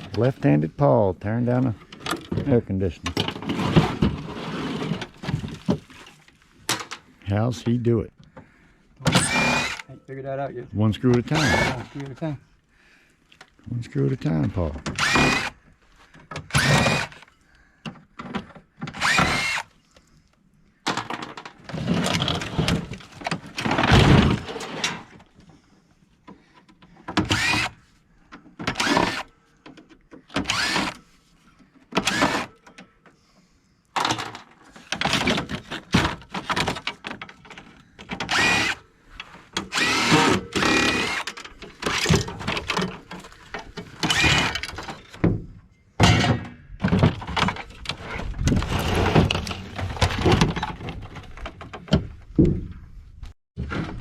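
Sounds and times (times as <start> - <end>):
power drill whirring: 9.1 - 9.9, 11.3 - 12.0, 14.9 - 15.6, 16.5 - 17.3, 18.9 - 19.7, 27.2 - 27.8, 28.7 - 29.3, 30.4 - 31.0, 32.0 - 32.6, 38.2 - 38.8, 39.6 - 42.2, 44.0 - 44.7.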